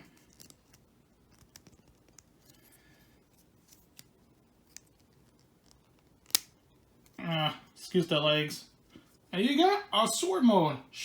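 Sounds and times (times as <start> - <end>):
sharp plastic snap: 6.2 - 6.6.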